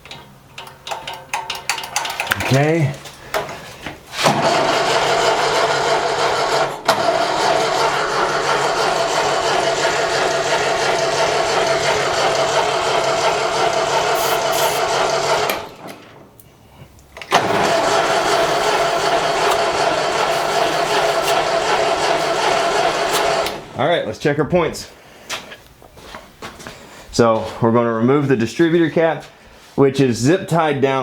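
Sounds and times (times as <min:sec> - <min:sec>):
starter motor cranking engine: 0:04.2 - 0:16.4, 0:17.2 - 0:23.8.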